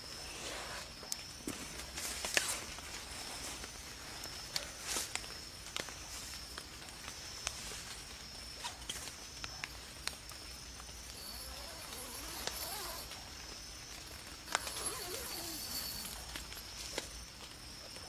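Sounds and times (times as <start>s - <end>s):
night insects chirring: 0.0s - 18.0s
small clicks and snaps: 3.6s - 11.1s
faint wavering call: 11.1s - 13.4s, 14.5s - 17.1s.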